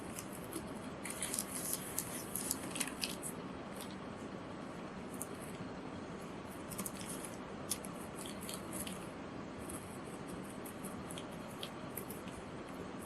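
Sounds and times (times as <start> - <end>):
room hiss: 0.0 - 13.0.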